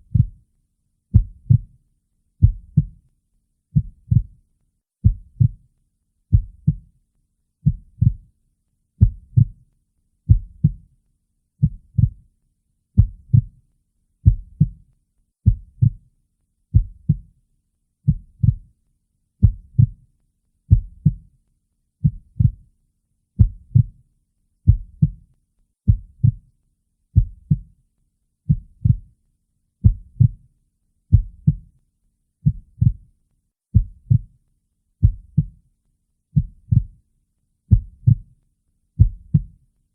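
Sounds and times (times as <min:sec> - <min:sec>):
heartbeat thumps: 0:01.2 - 0:01.7, 0:02.4 - 0:02.9, 0:03.8 - 0:04.3, 0:05.0 - 0:05.6, 0:14.2 - 0:14.8, 0:15.5 - 0:16.0, 0:16.8 - 0:17.2, 0:19.4 - 0:20.0, 0:20.7 - 0:21.2, 0:23.4 - 0:23.9, 0:24.7 - 0:25.2, 0:25.9 - 0:26.4, 0:27.2 - 0:27.7, 0:29.9 - 0:30.3, 0:33.8 - 0:34.3, 0:35.0 - 0:35.6, 0:37.7 - 0:38.2, 0:39.0 - 0:39.5.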